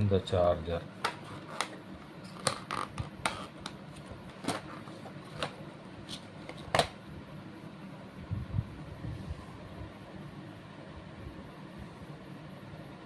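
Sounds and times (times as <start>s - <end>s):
charger and packaging handling: 1.0s - 7.0s.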